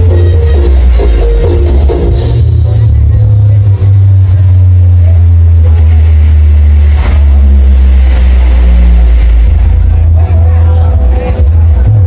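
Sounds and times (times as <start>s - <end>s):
loud distorted deep bass: 0.0s - 12.0s.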